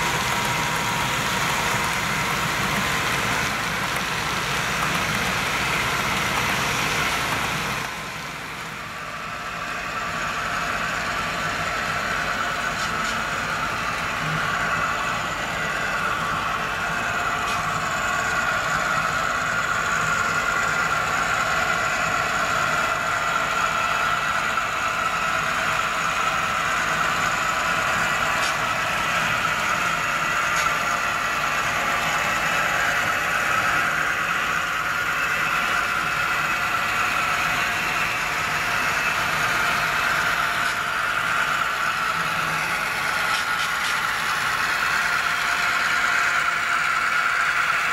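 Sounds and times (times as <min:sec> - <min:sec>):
high whine: 0:00.0 - 0:47.9
model train engine drone: 0:00.0 - 0:47.9.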